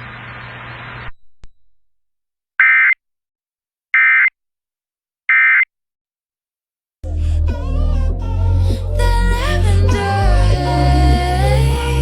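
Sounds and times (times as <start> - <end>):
music: 7.0 - 12.0.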